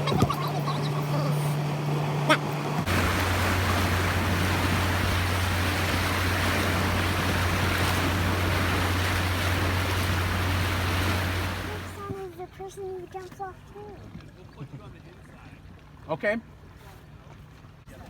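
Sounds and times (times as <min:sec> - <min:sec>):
water rushing: 0:00.0 - 0:13.0
motorboat engine droning: 0:00.0 - 0:18.0.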